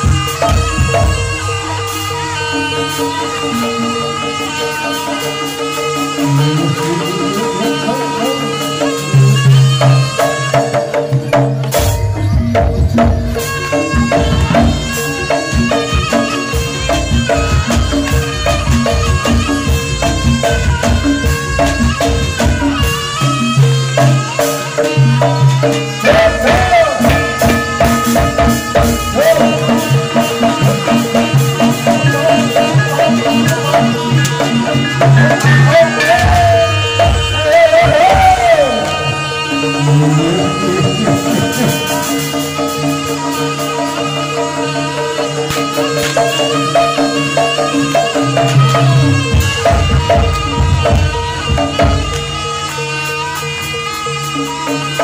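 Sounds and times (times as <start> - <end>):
wavering melody line: 0.0 - 10.8, 11.7 - 55.0
drum and gong beat: 0.0 - 55.0.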